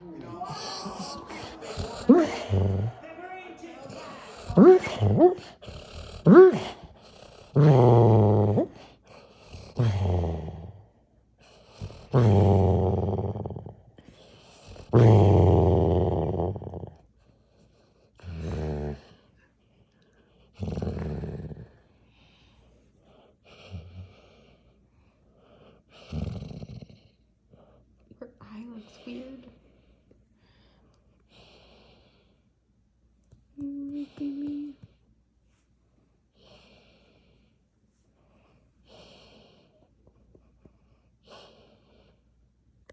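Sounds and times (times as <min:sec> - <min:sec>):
dog snoring: 0:01.0 - 0:02.9, 0:03.8 - 0:17.1, 0:18.2 - 0:19.2, 0:20.5 - 0:21.9, 0:25.4 - 0:27.8.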